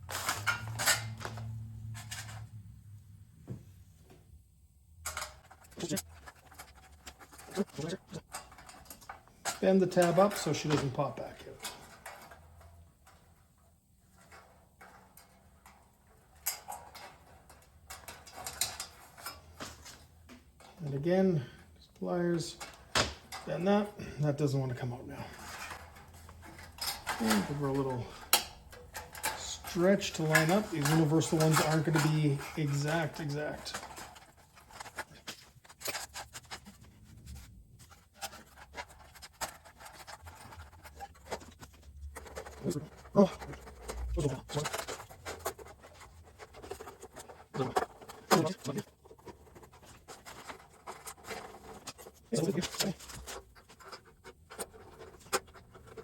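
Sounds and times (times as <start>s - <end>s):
metal scraping on metal: 0.0s - 2.6s, 5.1s - 56.0s.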